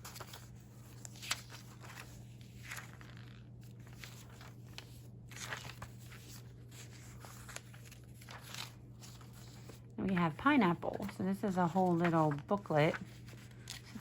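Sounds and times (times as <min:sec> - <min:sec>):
paper rustling and crinkling: 0:00.0 - 0:14.0.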